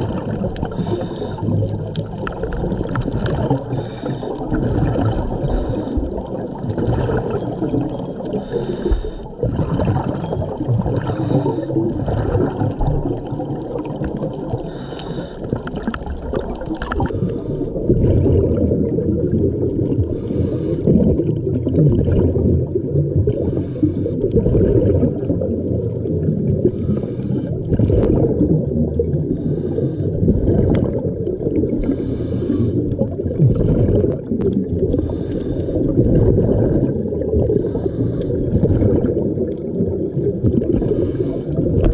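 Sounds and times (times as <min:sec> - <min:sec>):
underwater rumble and bubbles: 0:00.0 - 0:41.9
diver breathing through regulator: 0:00.6 - 0:01.7, 0:03.4 - 0:06.3, 0:08.2 - 0:09.8, 0:10.9 - 0:12.6, 0:14.5 - 0:15.7, 0:16.9 - 0:17.9, 0:20.0 - 0:21.0, 0:23.3 - 0:24.3, 0:26.6 - 0:27.7, 0:29.3 - 0:30.6, 0:31.8 - 0:34.0, 0:34.8 - 0:36.2, 0:37.4 - 0:38.7, 0:40.6 - 0:41.9.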